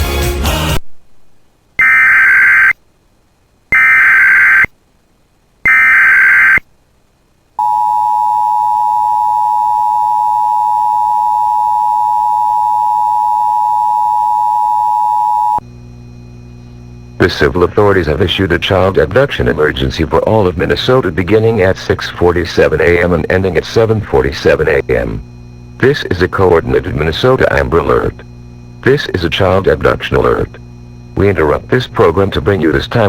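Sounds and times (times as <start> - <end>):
buzzy digital data screech: 1.8 - 2.8, 3.7 - 4.7, 5.7 - 6.6
two-tone attention signal: 1.8 - 2.8, 3.7 - 4.7, 5.7 - 6.6.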